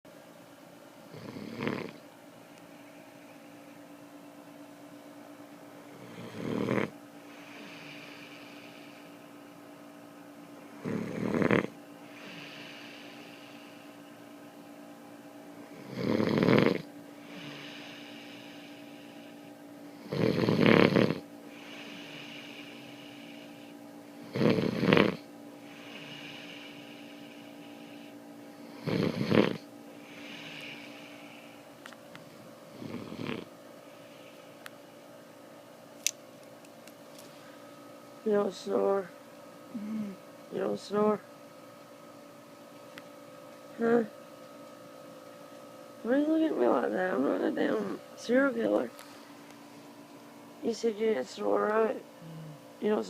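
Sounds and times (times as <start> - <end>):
faint steady hum: 0.1 - 53.0
man snoring: 1.1 - 2.0, 6.0 - 8.7, 10.8 - 13.6, 15.8 - 19.3, 20.0 - 23.4, 24.2 - 28.0, 28.7 - 31.5, 32.7 - 33.5, 52.2 - 52.6.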